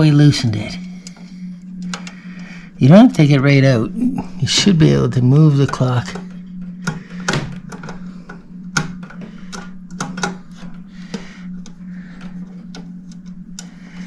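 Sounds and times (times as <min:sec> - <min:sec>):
steady low hum: 0:00.0 - 0:14.0
clock movement clicks and knocks: 0:05.5 - 0:14.0.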